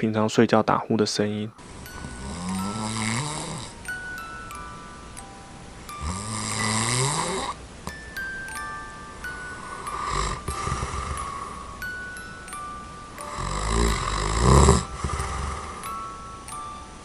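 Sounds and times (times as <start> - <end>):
soft chime-like music: 1.2 - 17.0
man snoring: 1.7 - 3.8, 6.0 - 7.6, 9.7 - 11.7, 13.2 - 16.0.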